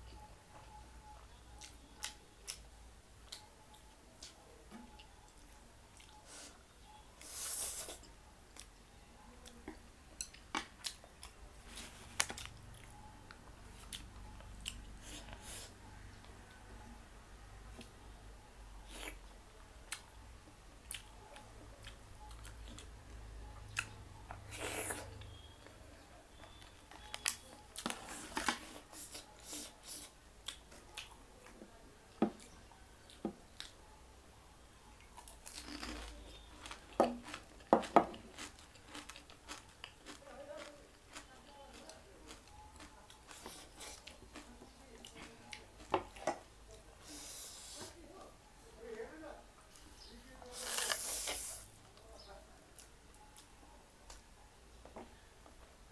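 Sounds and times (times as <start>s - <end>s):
person chewing food: 3.2s - 6.3s, 9.4s - 16.4s, 20.8s - 23.0s, 26.4s - 31.6s, 35.0s - 47.9s.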